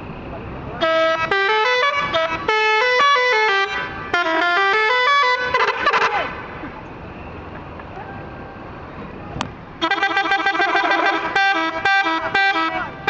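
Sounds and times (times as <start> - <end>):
multi-tone air horns playing melody: 0.8 - 6.3, 9.8 - 13.0.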